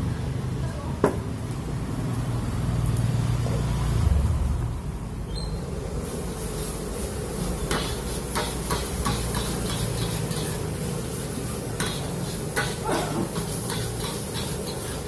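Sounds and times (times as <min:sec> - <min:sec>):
frying hiss: 0:00.1 - 0:15.0
metal spatula clinking on wok: 0:11.8 - 0:15.0.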